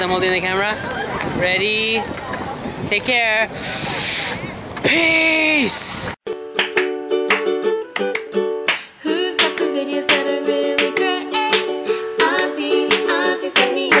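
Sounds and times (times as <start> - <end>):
plucked-string tune: 6.3 - 14.0.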